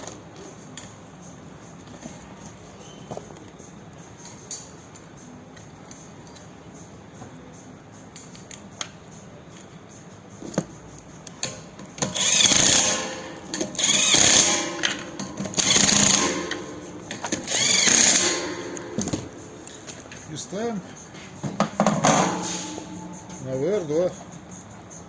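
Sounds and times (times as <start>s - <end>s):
power tool motor bursts: 12.0s - 19.8s.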